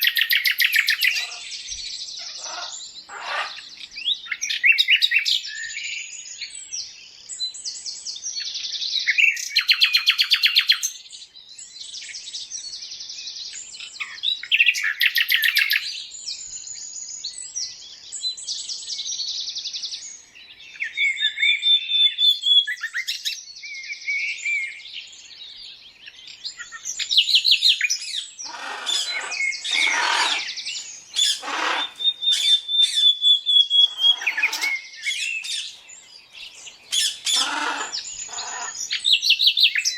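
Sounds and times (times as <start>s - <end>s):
coarse lower bird calls: 0.0s - 5.8s, 26.5s - 35.8s, 36.5s - 39.9s
songbirds singing and chirping: 0.0s - 39.9s.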